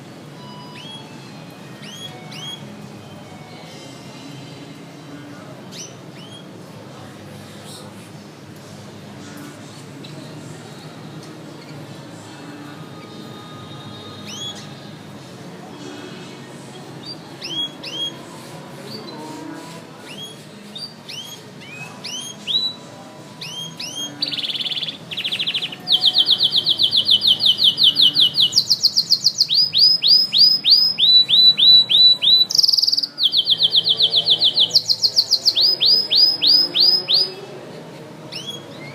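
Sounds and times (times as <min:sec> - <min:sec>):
canary singing fast trills: 0:01.8 - 0:02.7, 0:13.0 - 0:14.8, 0:17.0 - 0:18.2, 0:20.0 - 0:22.8, 0:23.4 - 0:37.4, 0:38.3 - 0:38.9.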